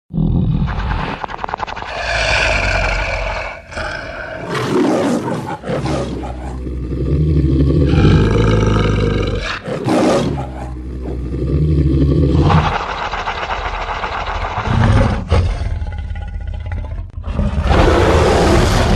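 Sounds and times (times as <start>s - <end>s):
deep growling monster roars: 0.1s - 18.9s.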